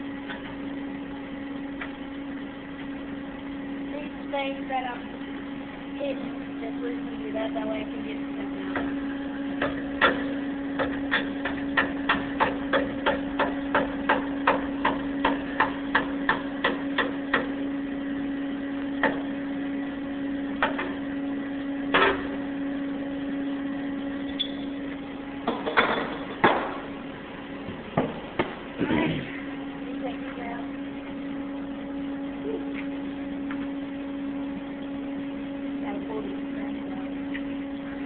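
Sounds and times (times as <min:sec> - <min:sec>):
steady machine hum: 0:00.0 - 0:38.0
hammer strikes: 0:09.6 - 0:17.5.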